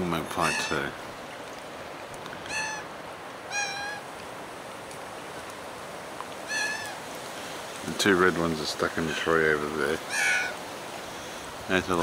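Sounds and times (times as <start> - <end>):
magpie honk-like calls: 3.5 - 4.0, 6.5 - 6.9, 10.1 - 10.6.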